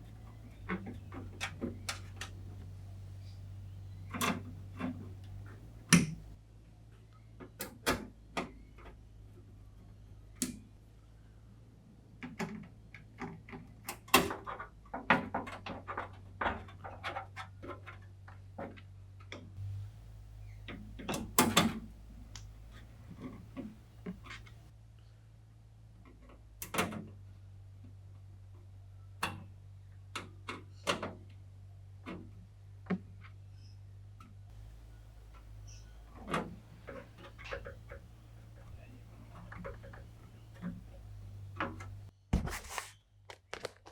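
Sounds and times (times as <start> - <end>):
steady low hum: 0.0 - 6.4, 19.6 - 24.7, 34.5 - 42.1.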